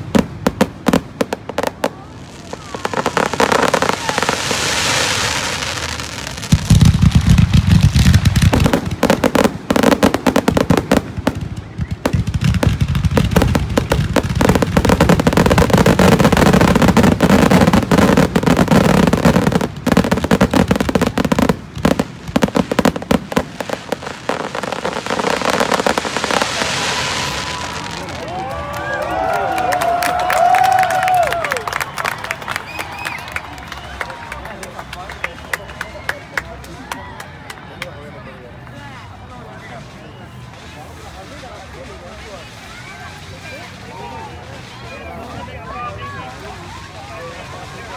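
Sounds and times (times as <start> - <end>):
fireworks bangs and crackling: 0.0 - 28.5.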